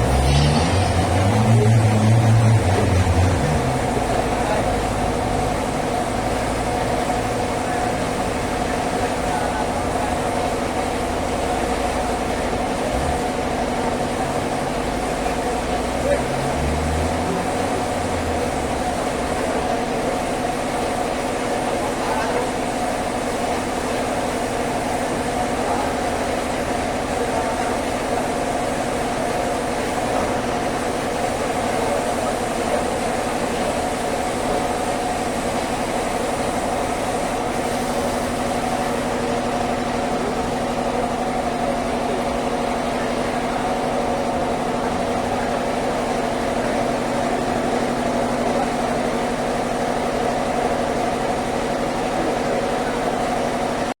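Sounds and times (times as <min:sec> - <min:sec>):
sawmill machinery humming: 0:00.0 - 0:53.9.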